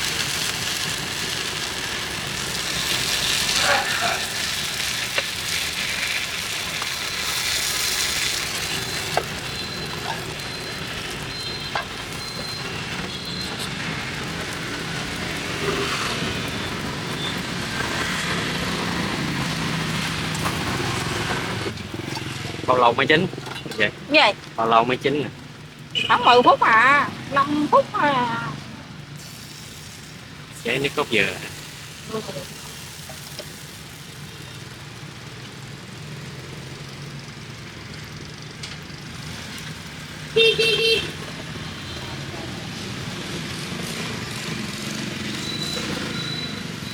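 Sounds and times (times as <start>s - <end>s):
pancakes sizzling in a pan: 0.0s - 21.2s, 29.0s - 46.9s
street traffic hum: 0.0s - 46.9s
vehicle horn honking: 25.9s - 26.6s, 40.4s - 41.2s.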